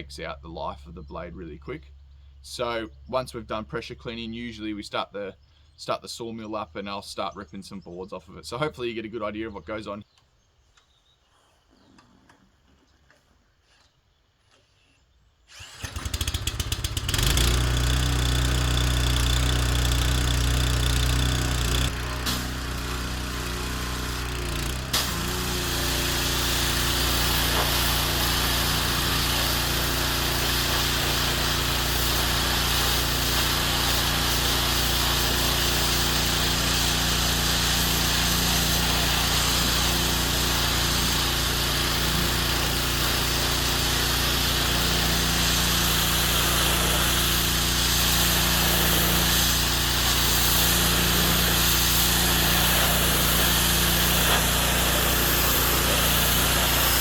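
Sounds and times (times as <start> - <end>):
small petrol engine running: 15.5 - 57.0
steady hiss: 37.9 - 57.0.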